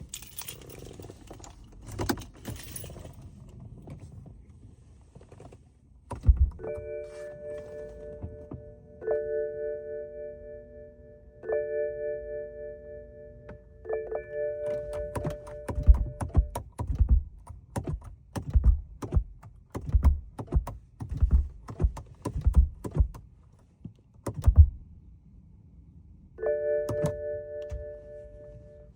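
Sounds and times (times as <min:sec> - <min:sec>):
car keys jangling: 0:00.0 - 0:04.2, 0:14.6 - 0:24.8, 0:26.9 - 0:28.0
dull thunks: 0:06.1 - 0:06.6, 0:15.2 - 0:23.2, 0:24.3 - 0:24.8
heavy low thud: 0:24.4 - 0:24.8.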